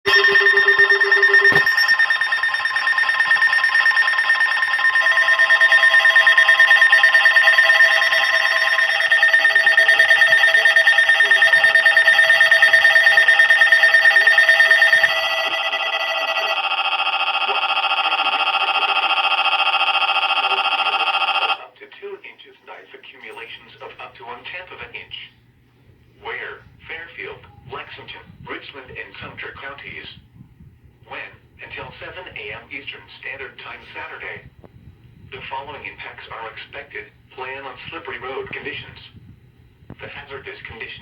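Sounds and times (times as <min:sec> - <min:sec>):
pulsing electronic alert beeping: 0:00.1 - 0:16.5.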